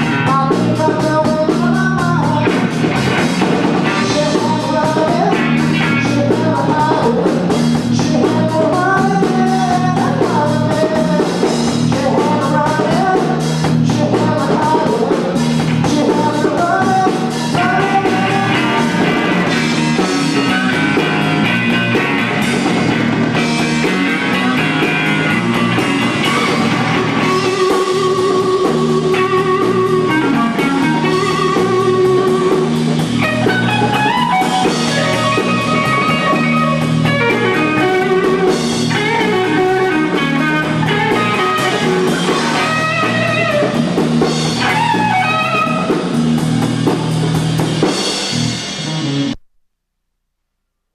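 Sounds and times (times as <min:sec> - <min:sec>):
person singing: 0:00.0 - 0:22.1, 0:23.3 - 0:43.8
rock-blues band playing: 0:00.0 - 0:49.4.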